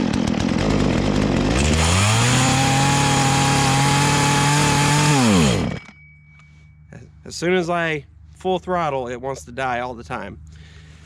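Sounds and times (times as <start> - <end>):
chainsaw engine revving: 0.0 - 5.8.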